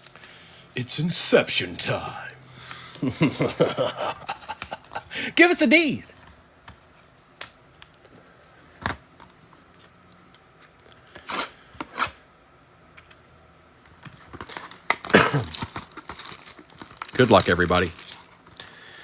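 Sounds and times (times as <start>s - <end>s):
rustling and handling: 13.8s - 18.6s
wrapping cutting and tearing: 14.5s - 18.4s.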